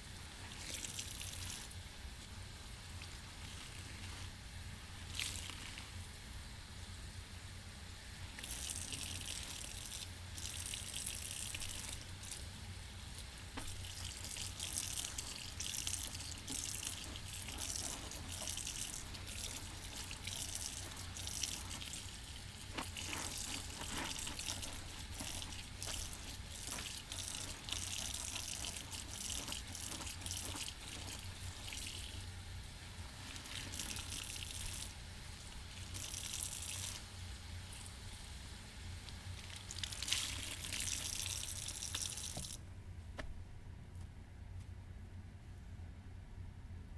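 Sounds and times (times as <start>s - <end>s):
tap water running: 0.0s - 1.7s, 8.2s - 38.3s, 39.0s - 42.6s
sponge squeezed with sloshing: 0.3s - 1.7s, 5.0s - 6.1s, 8.3s - 38.0s, 39.2s - 42.6s
water drips: 39.1s - 42.6s.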